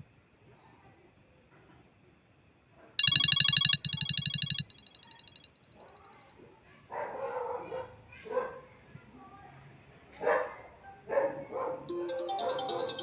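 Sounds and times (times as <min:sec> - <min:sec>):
electronic beeping alert trill: 0:03.0 - 0:05.4, 0:11.9 - 0:13.0
dog barking: 0:06.9 - 0:08.7, 0:10.2 - 0:11.9.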